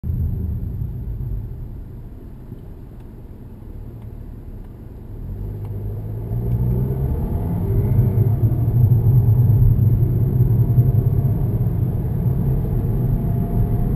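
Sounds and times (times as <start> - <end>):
car engine accelerating: 3.7 - 13.9.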